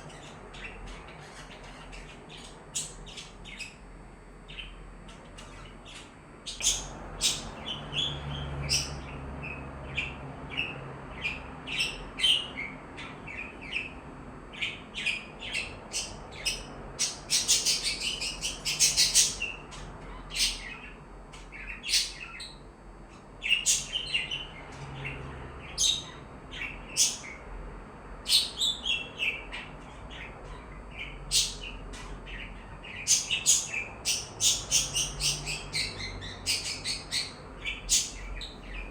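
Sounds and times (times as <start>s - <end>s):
budgies chirping: 0.0s - 27.5s, 28.2s - 38.9s.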